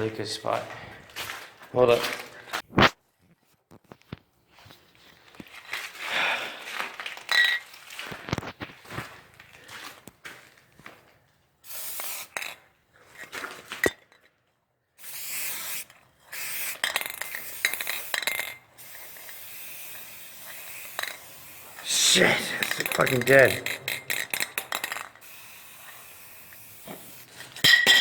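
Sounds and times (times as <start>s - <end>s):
spray paint can hissing: 11.6s - 12.6s, 15.0s - 27.6s.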